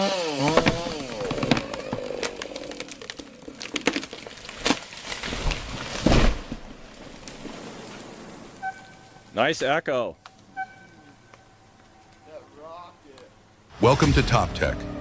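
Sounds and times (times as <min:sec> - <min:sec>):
chainsaw engine: 0:00.0 - 0:03.5
wood cracking and snapping: 0:00.0 - 0:08.1.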